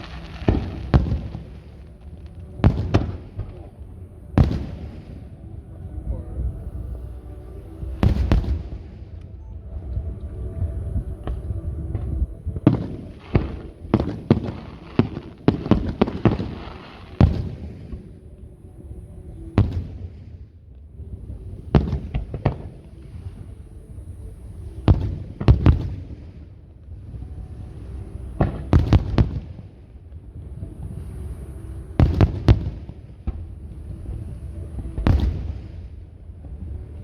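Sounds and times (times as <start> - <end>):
fireworks bangs: 0.0 - 3.7, 4.4 - 5.4, 8.0 - 9.3, 11.2 - 18.2, 28.4 - 29.8, 34.8 - 36.0
low rumble: 0.0 - 37.0.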